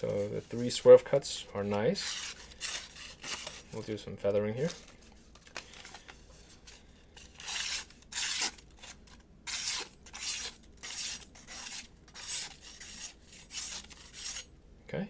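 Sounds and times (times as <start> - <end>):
knife slicing paper: 0.0 - 3.8, 6.6 - 14.5.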